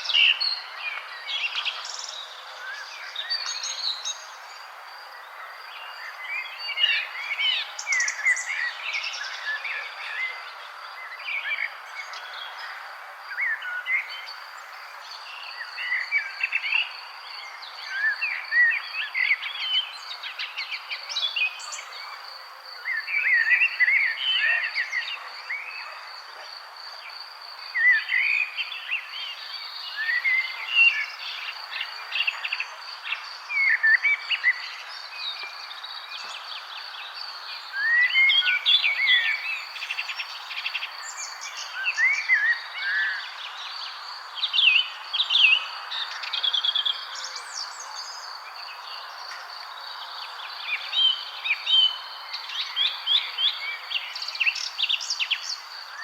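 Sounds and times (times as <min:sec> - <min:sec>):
outdoor background hiss: 0:00.0 - 0:56.0
songbirds chirping and twittering: 0:00.0 - 0:56.0.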